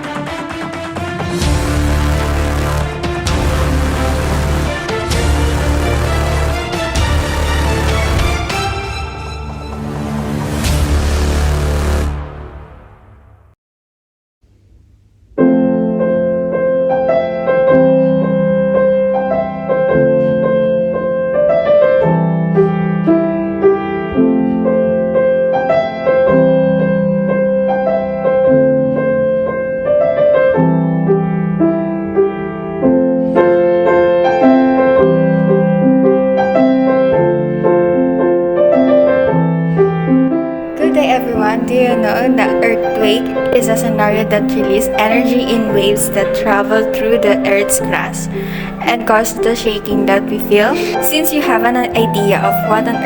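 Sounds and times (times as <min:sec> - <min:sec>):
slow piano music: 0:15.4 - 0:53.0.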